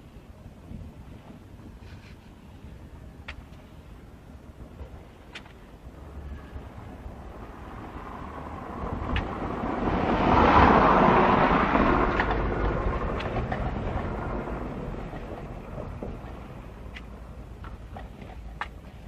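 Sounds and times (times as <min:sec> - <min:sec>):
low rumble: 0:05.8 - 0:18.0
vehicle passing by: 0:07.1 - 0:16.9.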